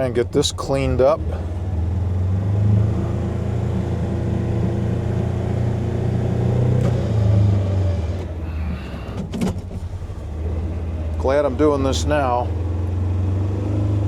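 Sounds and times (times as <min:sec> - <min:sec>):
utility vehicle engine under load: 0:00.0 - 0:14.0.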